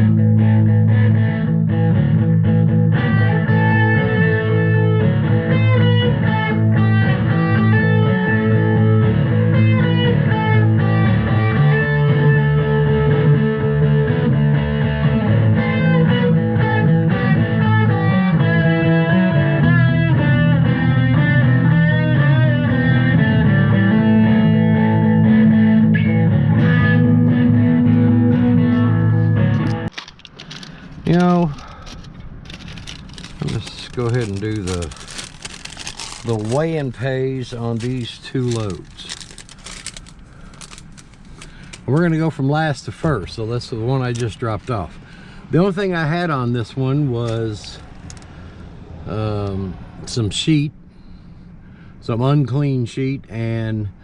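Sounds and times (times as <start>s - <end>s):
rock guitar music: 0.0s - 30.0s.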